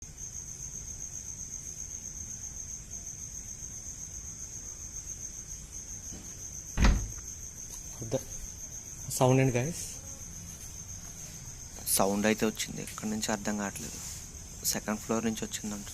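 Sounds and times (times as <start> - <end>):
crickets chirring: 0.0 - 15.9
loud heavy thump: 6.8 - 7.2.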